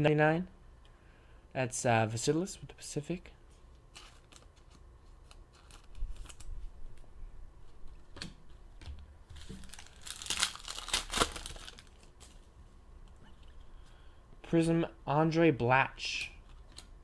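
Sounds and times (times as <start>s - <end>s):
wrapper crinkling and tearing: 3.9s - 6.6s, 9.3s - 12.4s.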